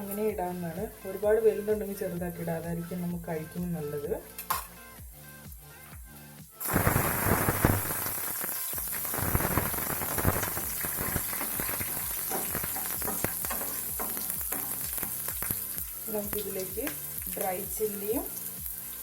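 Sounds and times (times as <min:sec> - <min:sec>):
garlic sizzling in hot oil: 0:06.6 - 0:19.0.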